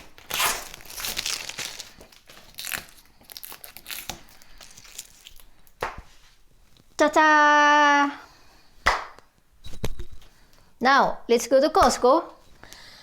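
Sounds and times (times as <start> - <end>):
plastic wrapping crinkling and tearing: 0.0 - 5.8.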